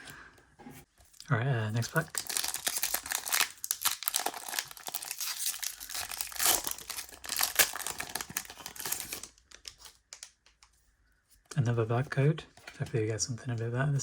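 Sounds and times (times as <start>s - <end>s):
foil wrapper tearing and crinkling: 1.8s - 10.0s.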